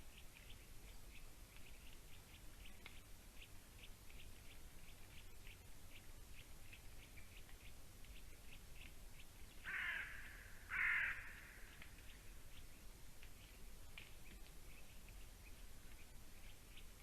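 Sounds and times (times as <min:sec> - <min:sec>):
crow cawing: 0:09.6 - 0:11.7.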